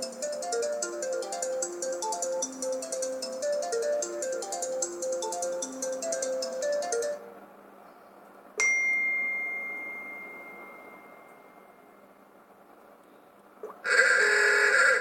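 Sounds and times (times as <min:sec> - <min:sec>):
phone ringtone melody: 0:00.0 - 0:07.4, 0:08.6 - 0:11.8
bell-like alert ding: 0:08.6 - 0:11.8.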